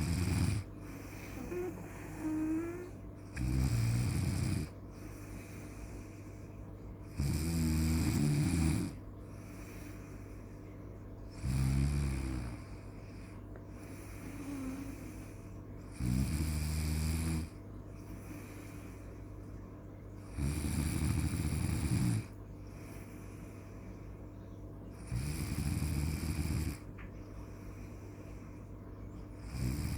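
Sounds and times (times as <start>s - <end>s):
loud snoring: 0.0s - 0.7s, 1.4s - 4.8s, 7.1s - 9.0s, 11.3s - 12.8s, 15.9s - 17.5s, 20.3s - 22.3s, 25.0s - 26.8s, 29.4s - 29.9s
faint breath: 0.8s - 2.9s, 4.9s - 6.8s, 9.2s - 10.9s, 12.6s - 15.6s, 18.0s - 19.5s, 22.6s - 24.5s, 27.2s - 29.0s.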